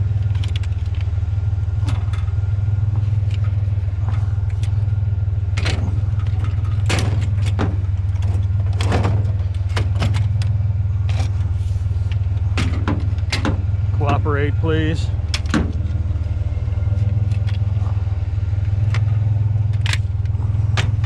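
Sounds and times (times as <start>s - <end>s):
vehicle engine idling: 0.0s - 21.0s
scrap metal clanking: 5.5s - 21.0s.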